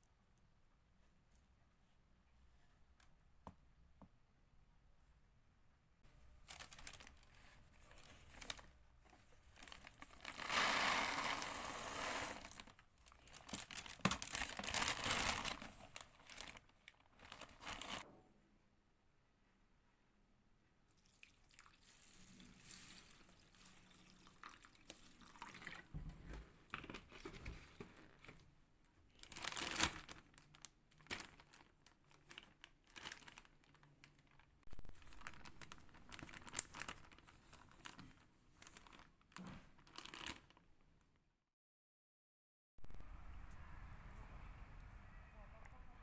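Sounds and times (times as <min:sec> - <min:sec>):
packaging crinkling: 0:06.4 - 0:08.8, 0:09.5 - 0:18.0, 0:29.1 - 0:40.6.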